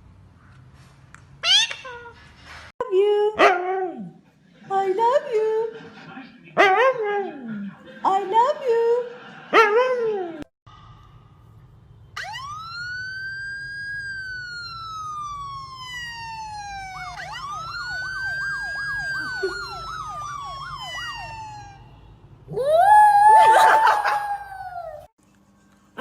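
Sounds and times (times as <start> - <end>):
emergency siren wailing and yelping: 12.2 - 25.1.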